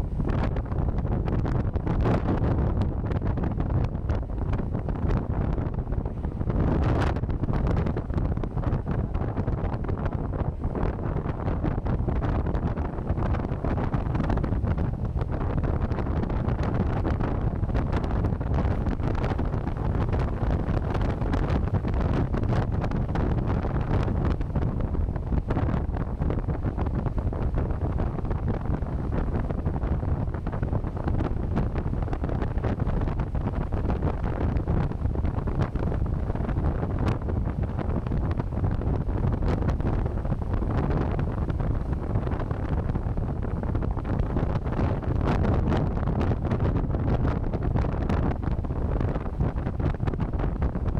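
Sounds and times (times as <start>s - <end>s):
wind blasting microphone: 0.0s - 50.9s.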